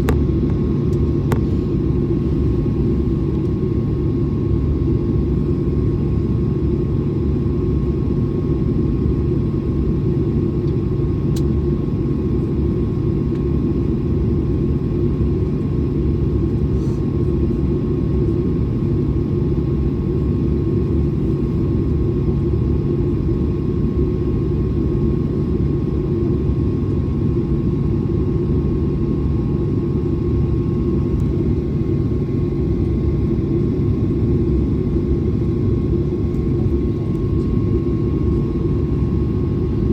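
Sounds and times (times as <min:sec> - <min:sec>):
jet engines rumbling: 0:25.6 - 0:39.9.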